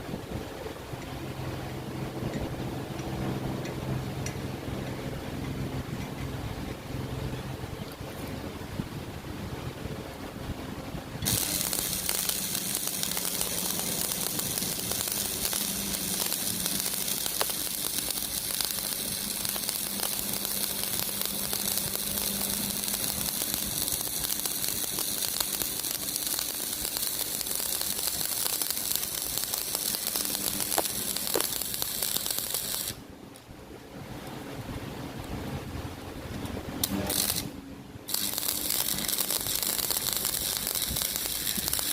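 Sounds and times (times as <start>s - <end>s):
welding arc crackling: 11.2s - 33.4s, 36.8s - 41.9s.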